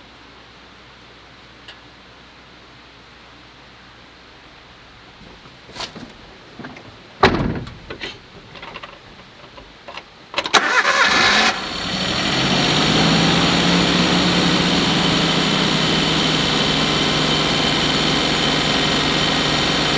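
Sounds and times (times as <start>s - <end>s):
car engine cranking and idling: 5.0s - 19.9s
knocks: 5.2s - 9.6s.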